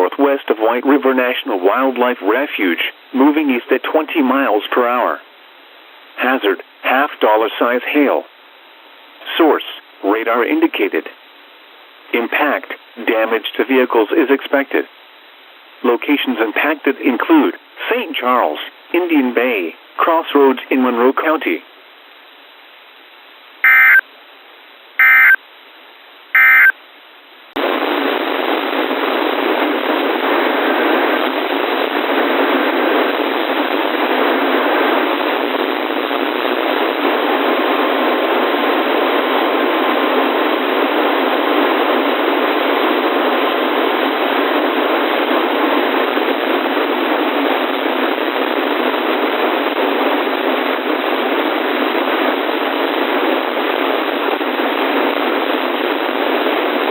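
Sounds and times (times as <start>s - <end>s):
radio static hiss: 0.0s - 56.9s
buzzy digital data bursts: 23.6s - 24.0s, 25.0s - 25.4s, 26.4s - 26.7s.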